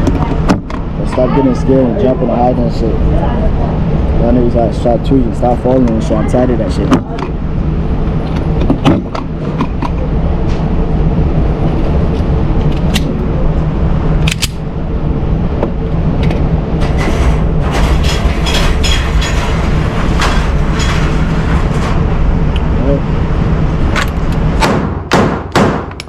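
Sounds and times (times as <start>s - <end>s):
low rumble: 0.0s - 25.2s
sharp gunshot cracks and clicks: 24.6s - 26.0s.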